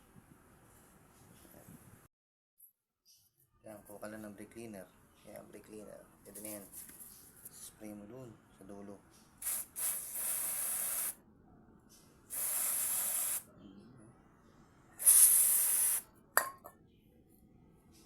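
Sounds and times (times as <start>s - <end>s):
aerosol spray hissing: 9.4s - 11.2s, 12.3s - 13.5s, 15.0s - 16.1s.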